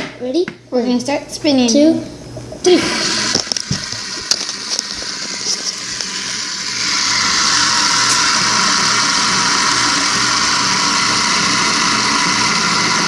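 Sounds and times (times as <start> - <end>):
fidget spinners whirring: 1.0 - 10.8.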